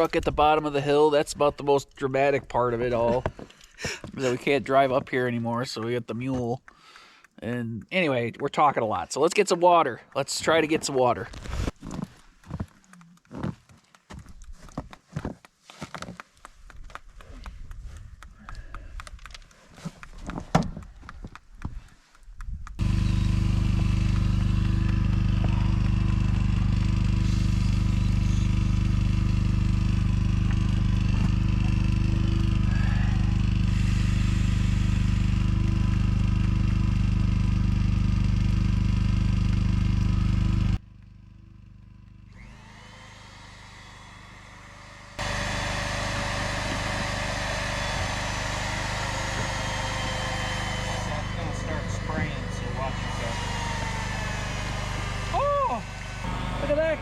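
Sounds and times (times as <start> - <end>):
small engine running: 22.8 - 57.0.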